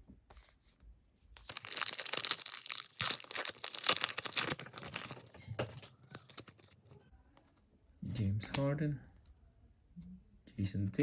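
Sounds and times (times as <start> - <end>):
plastic wrapper crinkling and tearing: 1.4 - 6.8.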